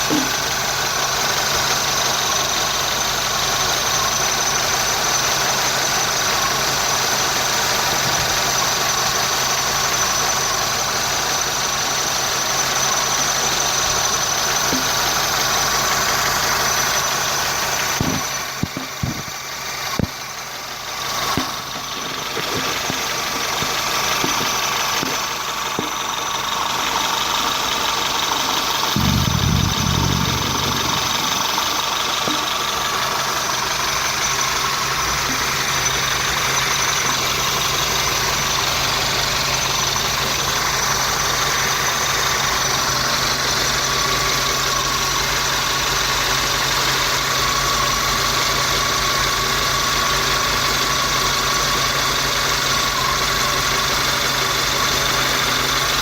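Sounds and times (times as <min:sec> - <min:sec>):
car engine idling: 0:00.0 - 0:56.0
low rumble: 0:29.0 - 0:33.6.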